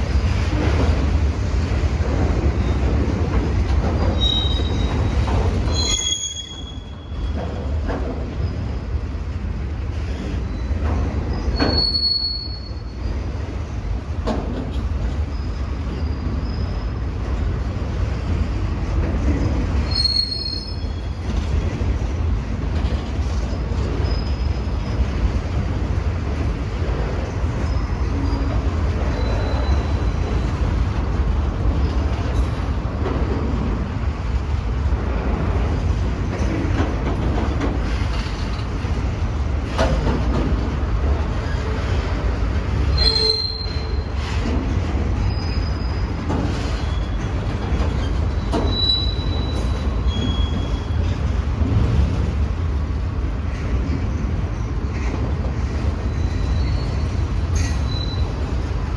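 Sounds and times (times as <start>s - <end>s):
train wheels rumbling on rail: 0.0s - 58.9s
high-pitched wheel squeals: 4.2s - 7.1s, 42.9s - 44.1s, 48.0s - 50.9s, 56.1s - 58.5s.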